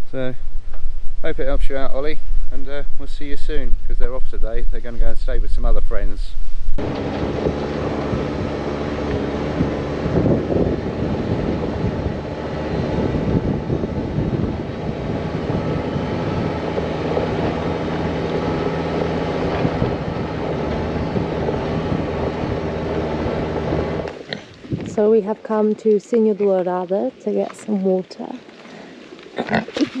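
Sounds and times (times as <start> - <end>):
background noise: 0.0 - 6.8
vehicle engine running: 0.0 - 24.3.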